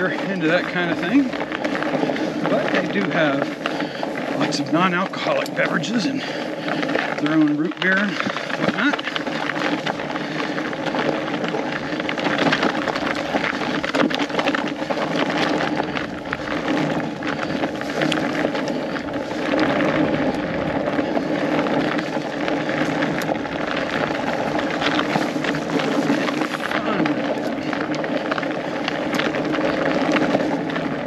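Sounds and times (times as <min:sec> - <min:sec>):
bike tires crackling on frozen trail: 0:00.0 - 0:31.0.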